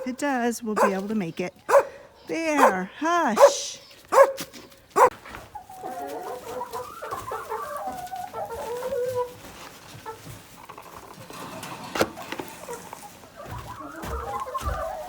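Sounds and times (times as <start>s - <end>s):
sharp yelps: 1.7s - 2.0s, 2.6s - 5.1s
chickens clucking softly: 3.8s - 15.0s.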